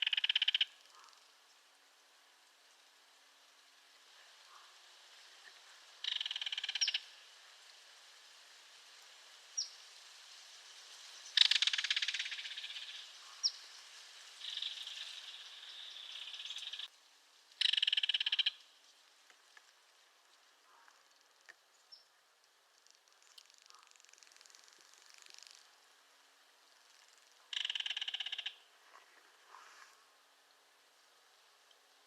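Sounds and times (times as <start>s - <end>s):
kingfisher rattling call: 0.0s - 1.1s, 6.0s - 7.1s, 11.4s - 13.6s, 14.4s - 16.9s, 17.6s - 18.6s, 26.9s - 28.7s.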